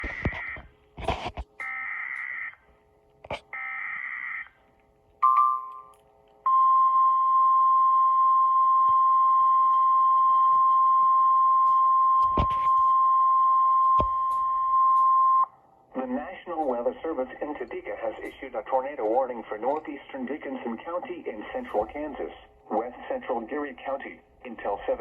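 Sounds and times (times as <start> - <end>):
steady alarm tone: 0.0 - 0.7, 1.6 - 2.8, 3.5 - 4.6
warbling data tones: 0.0 - 0.7.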